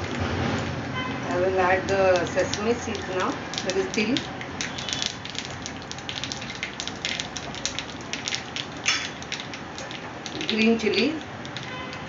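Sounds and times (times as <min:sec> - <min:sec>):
seeds crackling in hot oil: 0:00.0 - 0:12.0.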